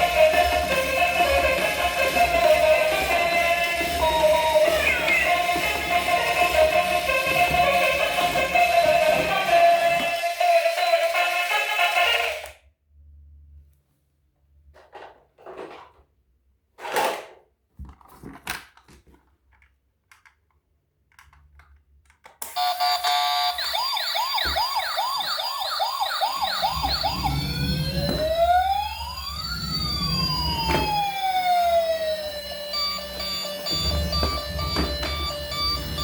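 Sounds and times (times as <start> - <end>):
electronic siren: 0.0 - 12.5, 22.6 - 36.0.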